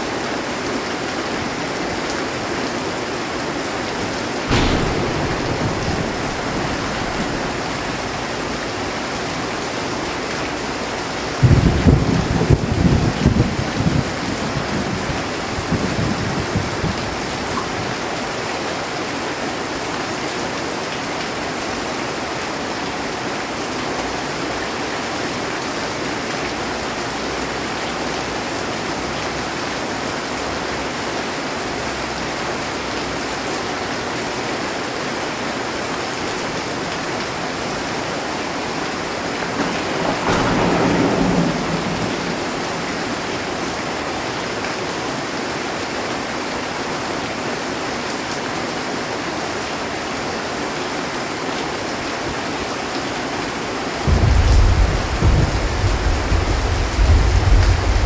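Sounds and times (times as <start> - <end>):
heavy rain on a metal roof: 0.0 - 58.0
thunder rumbling: 3.4 - 17.8, 37.6 - 45.6, 53.9 - 58.0.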